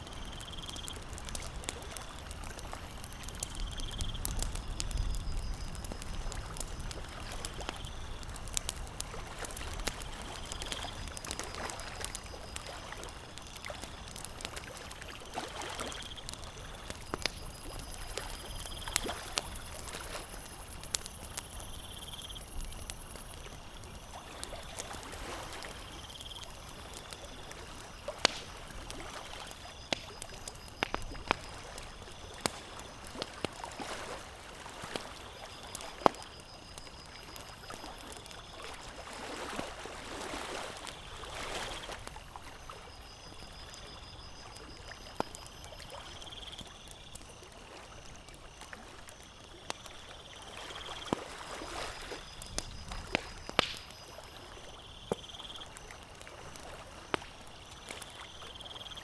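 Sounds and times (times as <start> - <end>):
campfire crackling and popping: 0.0 - 59.0
lake water lapping: 8.3 - 20.8, 23.2 - 36.3, 37.7 - 43.0, 48.7 - 58.4.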